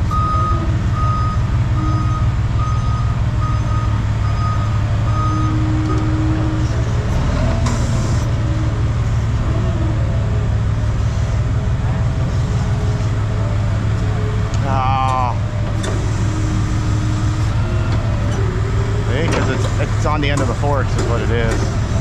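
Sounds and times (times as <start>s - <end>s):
reversing alarm beeping: 0.0s - 8.3s
forklift engine hum: 0.0s - 22.0s.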